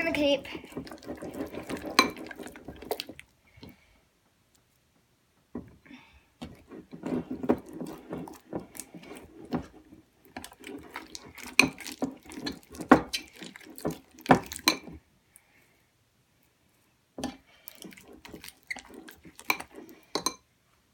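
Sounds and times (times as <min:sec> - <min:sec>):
slime squelching in a bowl: 0:00.0 - 0:03.8, 0:06.4 - 0:15.0, 0:17.2 - 0:20.4.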